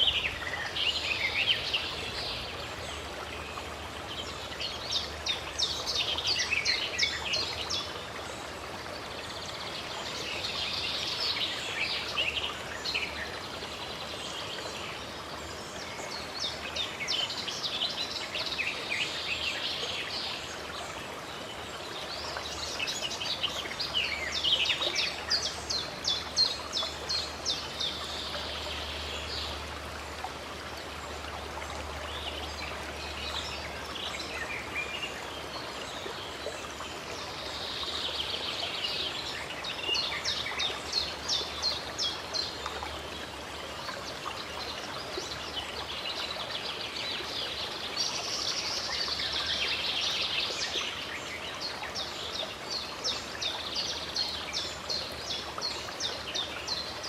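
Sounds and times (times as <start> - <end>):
running water: 0.0 - 57.0
songbirds chirping: 0.0 - 57.0.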